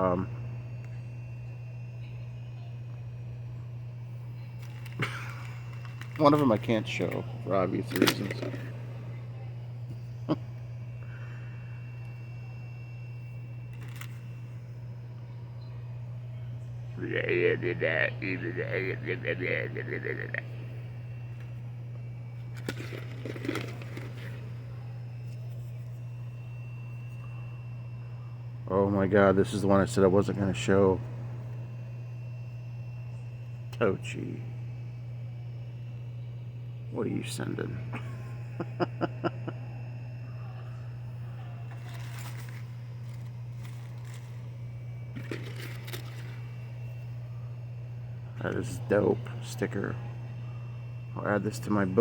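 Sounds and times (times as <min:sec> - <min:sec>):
steady low hum: 0:00.0 - 0:52.0
packaging rustling: 0:22.6 - 0:24.4, 0:45.2 - 0:46.4.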